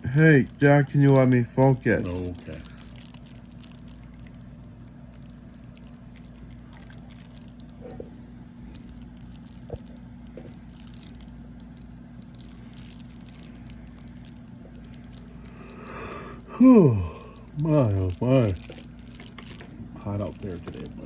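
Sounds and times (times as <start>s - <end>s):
steady low hum: 0.0s - 21.0s
playing cards being handled: 14.9s - 21.0s.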